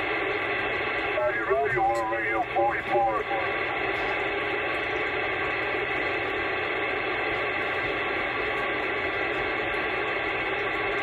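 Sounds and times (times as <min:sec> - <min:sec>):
radio hiss and static: 0:01.0 - 0:04.4.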